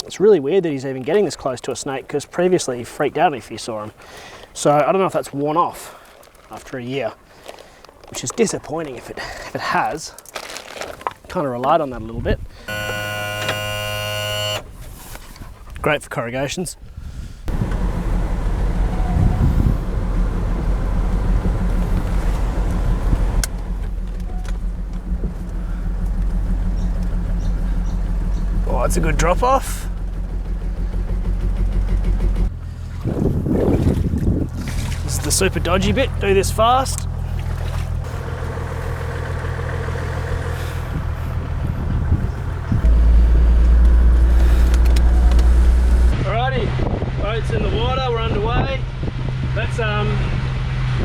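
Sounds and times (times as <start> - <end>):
engine and tyre rumble: 10.2 - 15.8, 16.9 - 51.0.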